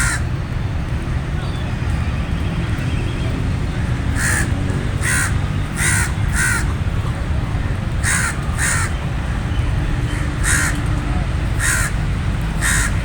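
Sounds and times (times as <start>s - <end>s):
crow cawing: 0.0s - 0.3s, 4.2s - 6.7s, 8.0s - 9.0s, 10.1s - 10.9s, 11.6s - 12.0s, 12.6s - 13.0s.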